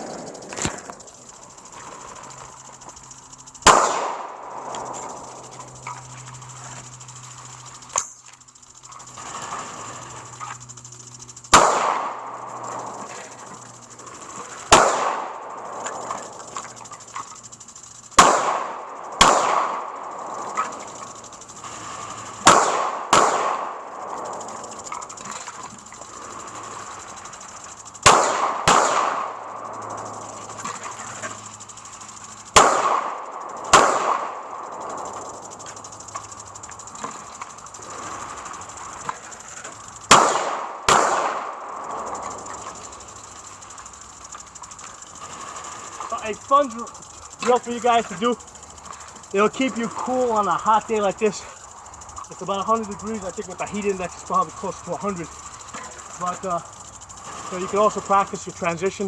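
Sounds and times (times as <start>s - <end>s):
rifle shots with echo: 3.6s - 5.4s, 11.5s - 12.4s, 14.7s - 15.3s, 18.2s - 20.3s, 22.4s - 24.2s, 28.0s - 29.7s, 32.6s - 34.6s, 40.1s - 41.9s.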